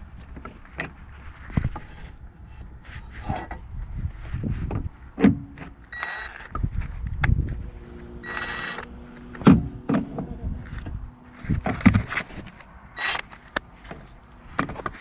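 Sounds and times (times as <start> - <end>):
handling knocks and clunks: 0.0 - 5.9, 9.3 - 15.0.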